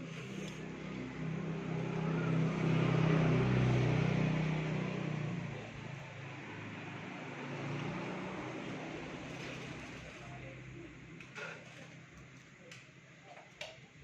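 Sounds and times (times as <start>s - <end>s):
vehicle engine drone passing: 0.0s - 10.6s.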